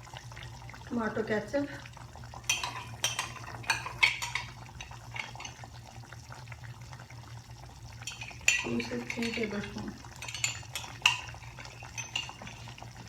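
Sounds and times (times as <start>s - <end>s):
metal spoon clinking on pan: 2.5s - 5.6s, 8.1s - 12.8s
spoon scraping pan: 2.5s - 5.6s, 8.1s - 13.0s.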